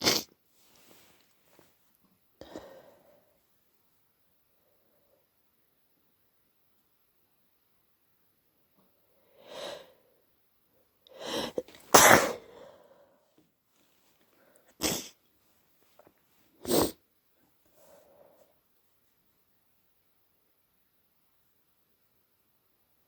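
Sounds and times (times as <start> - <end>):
person sneezing: 0.0 - 0.3, 11.2 - 12.8, 14.8 - 15.2, 16.6 - 17.0
soft breaths: 0.4 - 3.7, 8.9 - 14.8, 15.8 - 19.0.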